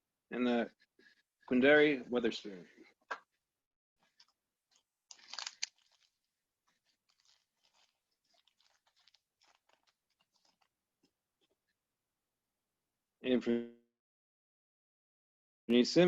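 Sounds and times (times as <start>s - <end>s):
cards rustling and clicking: 5.1s - 10.6s
foil wrapper ripping: 5.1s - 10.7s.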